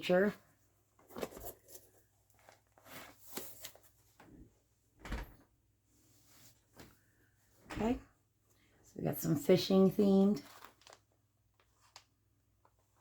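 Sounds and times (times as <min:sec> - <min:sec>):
plastic sleeves rustling: 0:00.2 - 0:04.6, 0:09.7 - 0:13.0.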